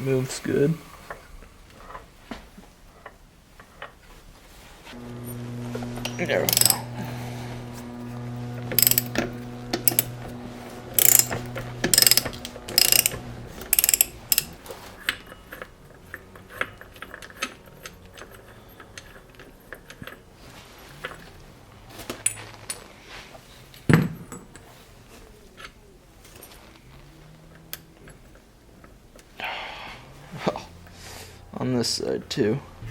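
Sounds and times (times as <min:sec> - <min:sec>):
metal tools clicking and ratcheting: 0:06.5 - 0:06.9, 0:08.8 - 0:09.2, 0:09.8 - 0:10.1, 0:11.0 - 0:20.3.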